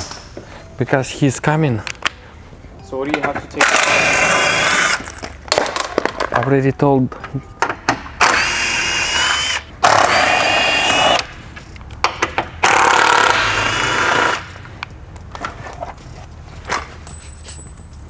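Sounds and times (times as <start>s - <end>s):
power tool whining: 3.6s - 5.2s, 8.2s - 11.3s, 12.6s - 14.5s.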